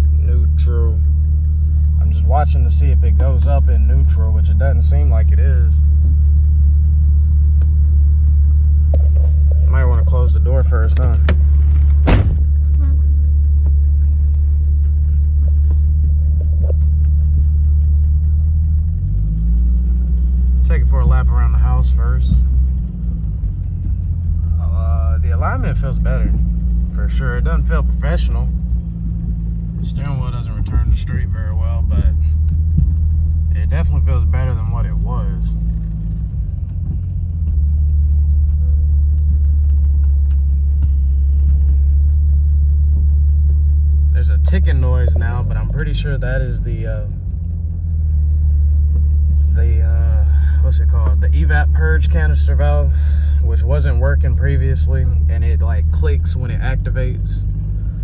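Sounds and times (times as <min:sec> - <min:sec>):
car engine idling: 0:00.0 - 0:58.0.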